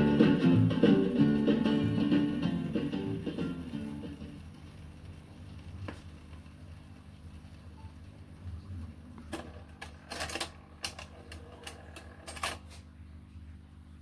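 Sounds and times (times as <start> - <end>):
record player mechanical clicks: 9.2 - 12.8.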